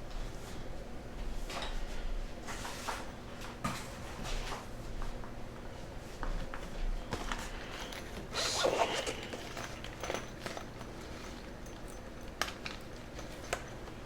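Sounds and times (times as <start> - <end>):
scraping rustle: 8.0 - 10.6.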